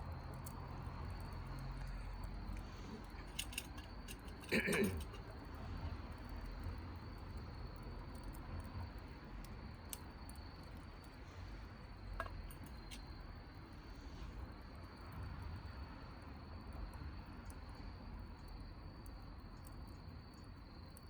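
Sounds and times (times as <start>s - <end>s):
campfire crackling and popping: 0.0s - 13.7s.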